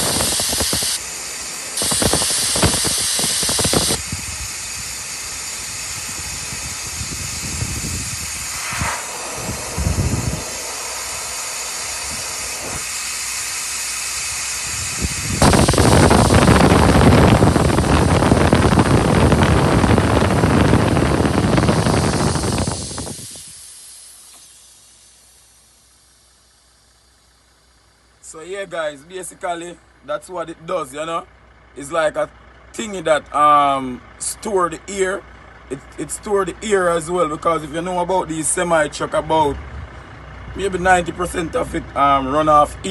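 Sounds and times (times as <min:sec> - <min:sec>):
loud rush of air: 0:00.0 - 0:26.0
compressed air hissing: 0:00.0 - 0:28.1.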